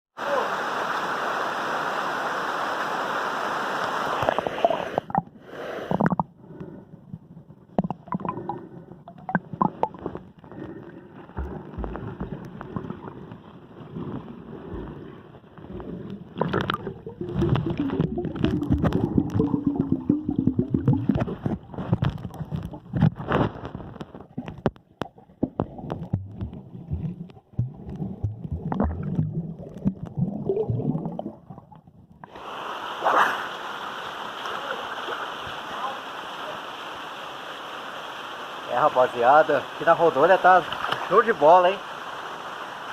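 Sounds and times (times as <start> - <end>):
waterfall rushing: 0.2 - 5.9, 32.3 - 42.9
underwater bubbling and gurgling: 4.2 - 33.7
underwater knocks: 15.7 - 23.2.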